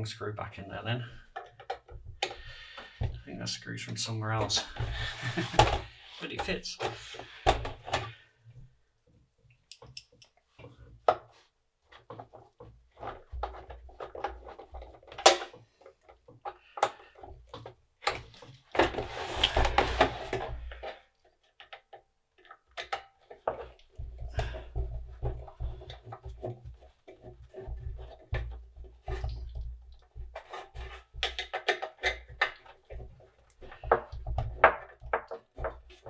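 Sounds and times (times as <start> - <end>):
metal case clicks and scrapes: 13.0 - 36.0
rustling scrape: 18.3 - 21.1, 23.6 - 31.6.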